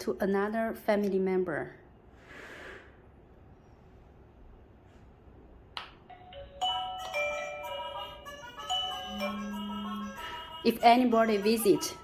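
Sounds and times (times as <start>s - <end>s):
doorbell chime melody: 6.1s - 10.5s.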